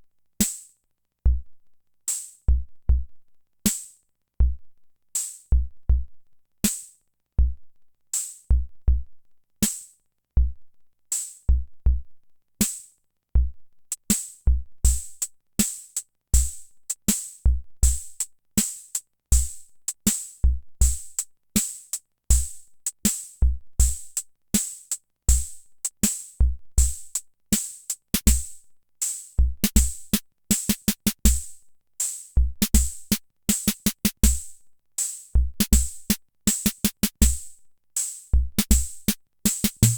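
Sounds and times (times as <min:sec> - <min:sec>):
drum machine beat: 0:28.2 - 0:28.5, 0:29.5 - 0:31.5, 0:32.6 - 0:34.4, 0:35.4 - 0:37.5, 0:38.4 - 0:39.9
snare-like hits: 0:39.6 - 0:39.9.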